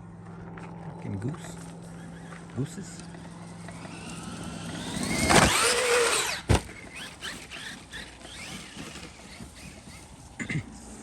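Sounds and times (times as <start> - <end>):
electric motor whining: 0.7 - 11.0.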